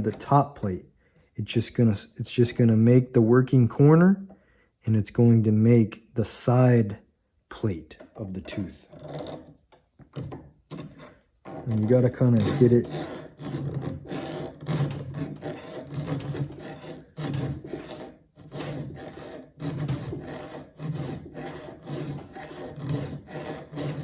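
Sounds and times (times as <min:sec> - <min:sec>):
file rasping on steel: 0:00.0 - 0:00.4, 0:08.5 - 0:09.6, 0:10.7 - 0:24.0.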